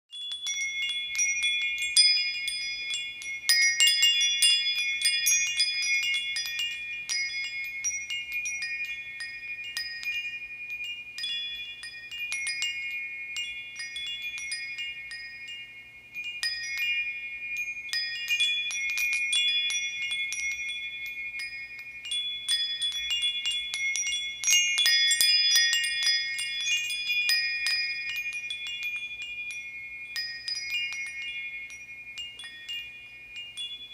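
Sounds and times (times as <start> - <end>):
metal wind chimes clashing: 0.1 - 33.9.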